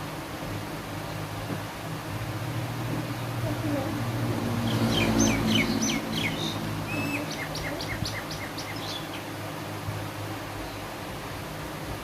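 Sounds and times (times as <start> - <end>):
steady low hum: 0.0 - 12.0
small bird chirping: 4.6 - 9.4.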